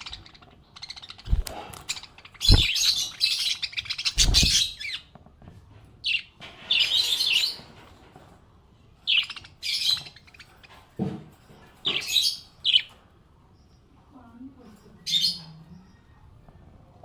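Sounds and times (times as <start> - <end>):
parrot chirping and chattering: 0.0 - 5.1, 9.0 - 10.9.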